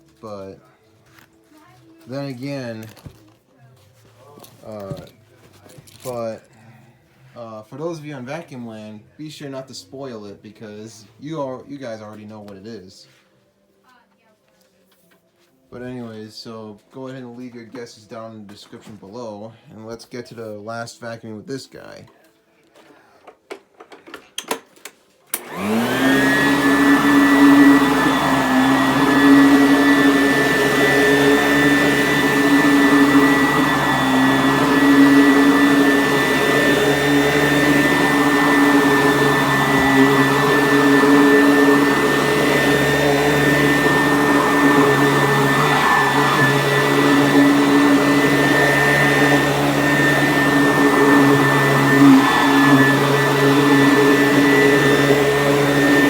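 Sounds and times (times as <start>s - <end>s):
vacuum cleaner motor whining: 25.3s - 56.0s.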